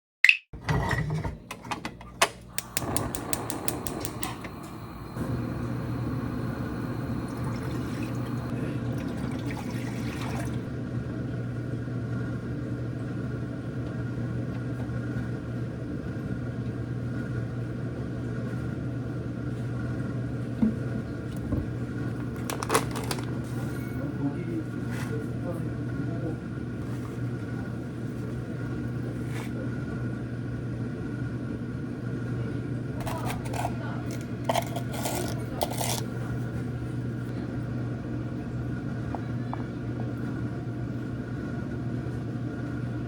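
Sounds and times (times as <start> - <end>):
mechanical hum: 0.6 - 43.0
quick clicks: 2.6 - 5.2.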